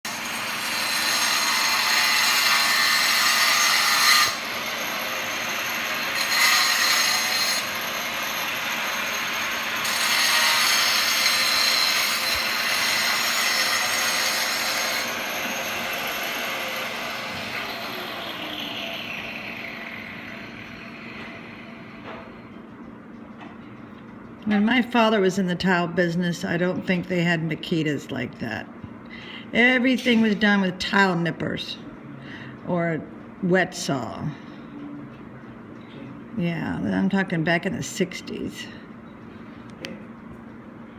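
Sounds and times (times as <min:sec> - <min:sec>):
power tool cutting tile: 0:00.1 - 0:21.3.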